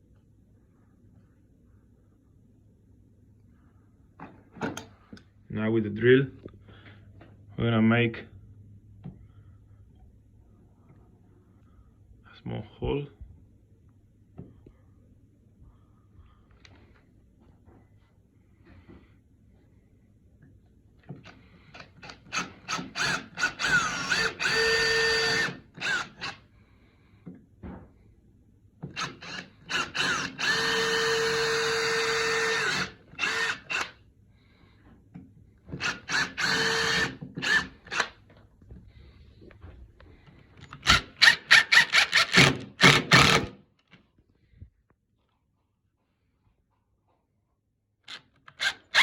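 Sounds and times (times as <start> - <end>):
power drill boring into wood: 22.0 - 26.4, 29.0 - 33.9, 35.8 - 38.1, 40.8 - 43.6, 48.5 - 49.0.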